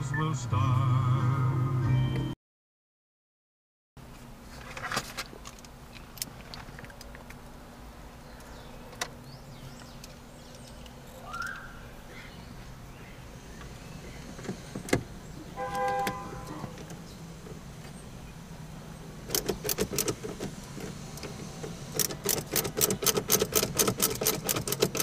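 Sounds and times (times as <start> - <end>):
car interior low hum: 4.0 - 25.0
sharp clicks: 19.3 - 25.0.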